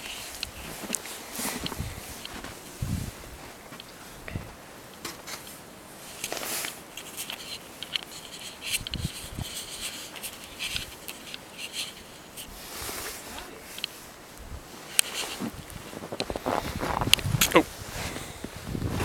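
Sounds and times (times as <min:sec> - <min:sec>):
footsteps crunching through snow: 0:00.0 - 0:03.8, 0:14.7 - 0:19.0.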